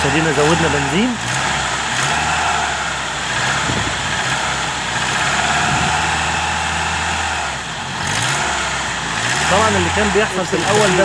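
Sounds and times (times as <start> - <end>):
car engine running: 0.0 - 11.0.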